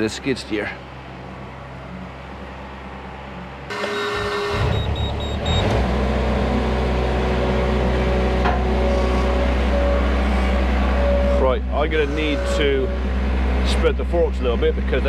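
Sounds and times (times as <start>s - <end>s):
engine cranking and running: 3.7s - 15.0s
high warning beeps: 4.1s - 5.8s.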